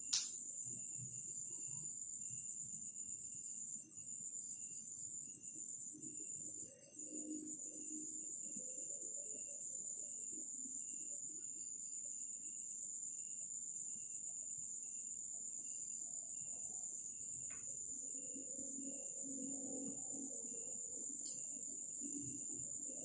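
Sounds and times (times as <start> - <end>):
crickets trilling: 0.0 - 23.0
insect chirping in low pulses: 0.0 - 23.0.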